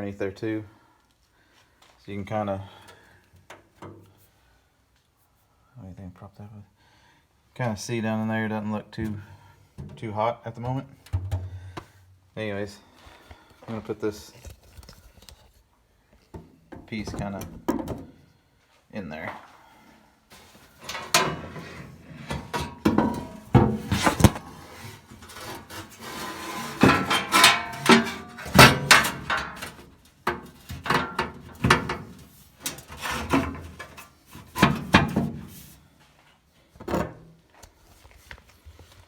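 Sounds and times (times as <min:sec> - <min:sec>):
metal panel knocking and scraping: 0:10.6 - 0:11.9, 0:20.4 - 0:35.7.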